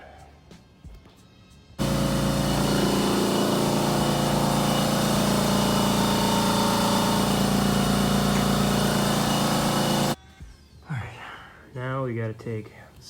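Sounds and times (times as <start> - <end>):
hydraulic pump motor running: 1.8 - 10.2.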